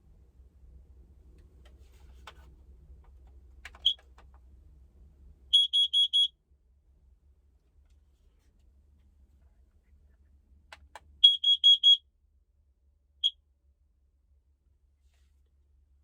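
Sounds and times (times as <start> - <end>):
carbon monoxide alarm beeping: 5.5 - 6.3, 11.2 - 12.0.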